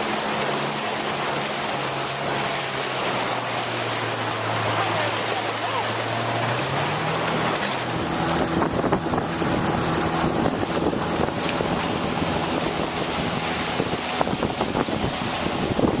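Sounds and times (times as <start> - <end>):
boat engine running: 0.0 - 16.0
water rushing: 0.0 - 16.0
wind buffeting microphone: 7.2 - 16.0.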